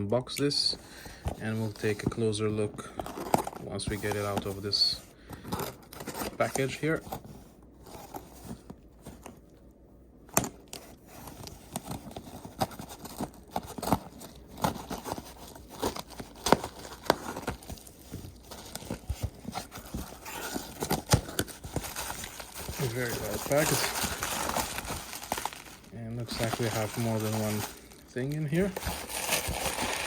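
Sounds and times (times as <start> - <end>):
package crinkling and tearing: 12.0 - 30.0.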